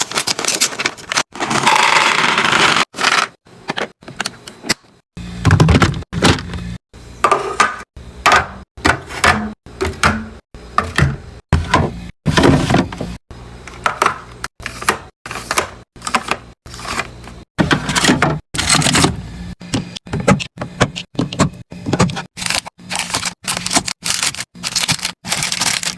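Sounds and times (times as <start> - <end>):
packaging rustle: 22.4 - 25.9.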